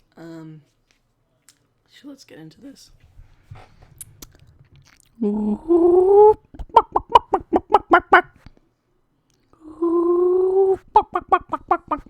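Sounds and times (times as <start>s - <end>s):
person imitating a chicken: 5.2s - 8.3s, 9.6s - 12.0s.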